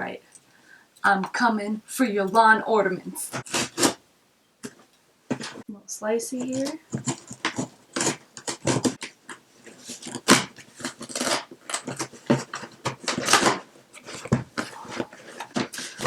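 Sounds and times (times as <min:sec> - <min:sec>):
cardboard box tearing: 0:03.4 - 0:04.0, 0:06.9 - 0:16.0.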